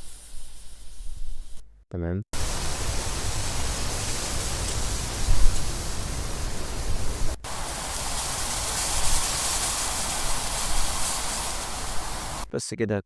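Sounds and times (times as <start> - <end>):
bright hissy rush: 2.4 - 12.5.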